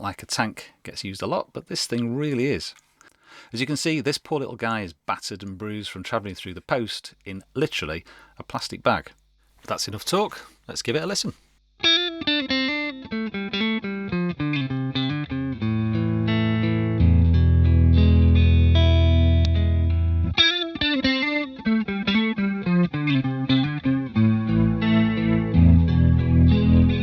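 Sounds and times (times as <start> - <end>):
electric guitar with chorus effect: 11.8 - 27.0.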